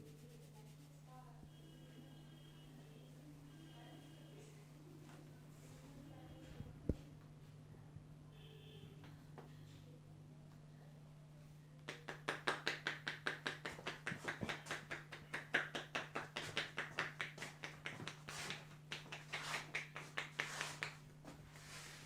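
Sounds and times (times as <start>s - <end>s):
hands tapping on head: 11.8s - 21.0s.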